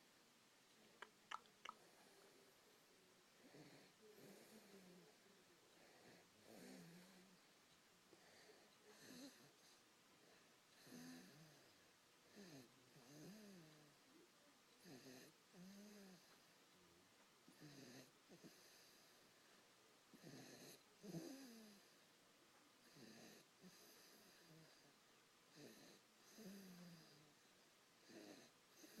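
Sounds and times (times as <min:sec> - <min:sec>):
baby snoring softly: 0:03.4 - 0:07.4, 0:08.2 - 0:09.8, 0:10.8 - 0:13.9, 0:20.1 - 0:22.0, 0:22.8 - 0:24.9, 0:25.5 - 0:27.3, 0:28.0 - 0:29.0.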